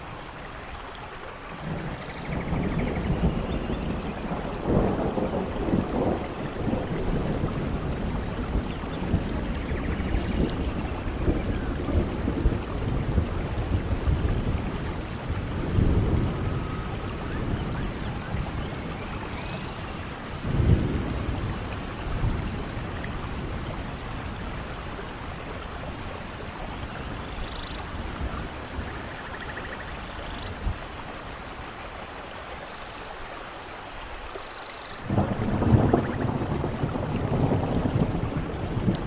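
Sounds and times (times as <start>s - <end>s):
steady rain: 0.0s - 39.0s
thunder rolling: 1.6s - 19.3s, 20.4s - 24.6s, 35.0s - 39.0s.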